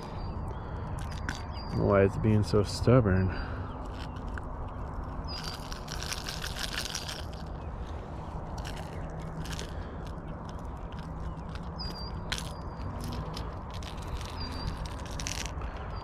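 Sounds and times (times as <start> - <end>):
bird chirping: 0.0 - 6.5, 7.4 - 16.0
hands clicking and scraping lure: 1.0 - 1.6, 3.8 - 7.7, 8.5 - 16.0.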